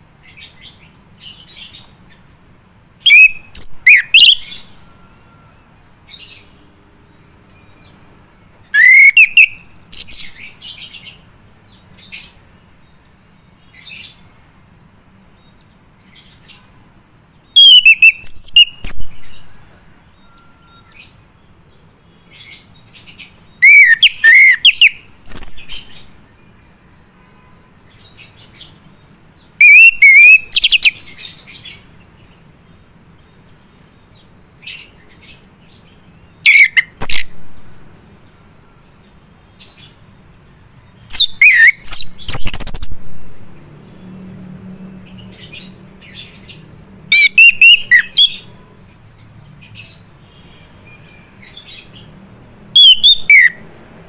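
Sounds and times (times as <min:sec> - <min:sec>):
single bird calls: 0:03.1 - 0:05.4, 0:08.6 - 0:10.5, 0:17.6 - 0:21.1, 0:23.6 - 0:26.1, 0:29.6 - 0:31.9, 0:36.4 - 0:37.8, 0:41.1 - 0:43.5, 0:47.1 - 0:51.9, 0:52.8 - 0:53.6.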